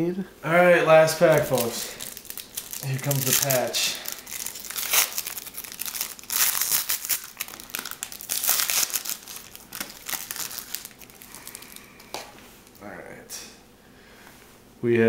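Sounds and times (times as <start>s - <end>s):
plastic wrapping crinkling and tearing: 1.0s - 12.9s.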